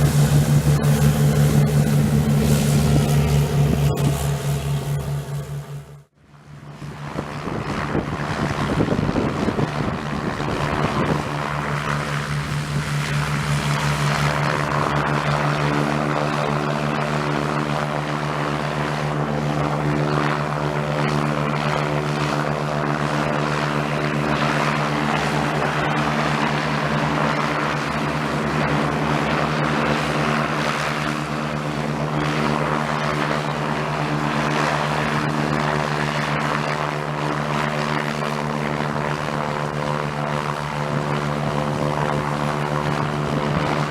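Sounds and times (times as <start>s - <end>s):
propeller aircraft engines droning: 0.0s - 43.9s.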